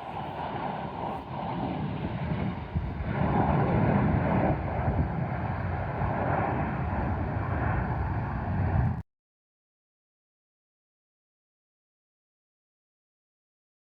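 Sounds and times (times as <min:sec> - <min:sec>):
aircraft engine rushing: 0:00.0 - 0:09.0.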